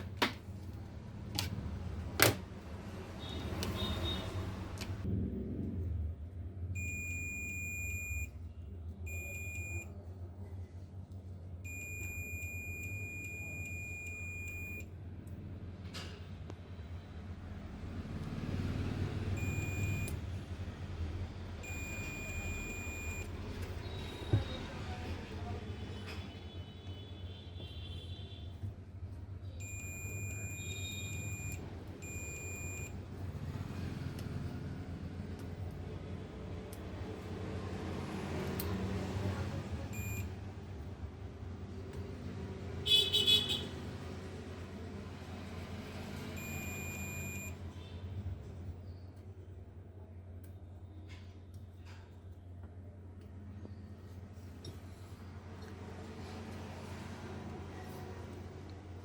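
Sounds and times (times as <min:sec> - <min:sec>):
electronic buzzer beeping: 0:19.4 - 0:20.1, 0:21.6 - 0:23.3.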